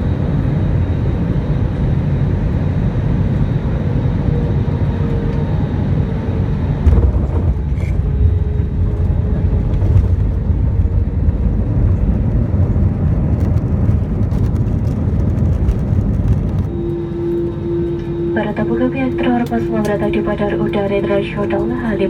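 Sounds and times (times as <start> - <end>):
airplane cabin low rumble: 0.0 - 22.0.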